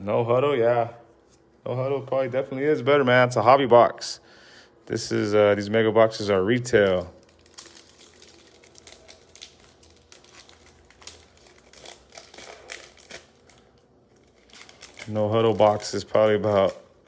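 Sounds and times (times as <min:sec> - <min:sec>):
card packs crinkling: 0:06.6 - 0:17.0.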